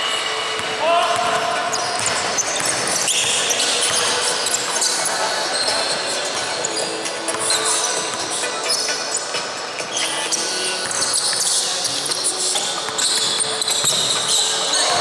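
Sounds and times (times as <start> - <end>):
echoing hall noise: 0.0 - 15.0
sneaker squeaks: 0.0 - 15.0
basketball bouncing on court: 0.5 - 5.0, 10.8 - 15.0.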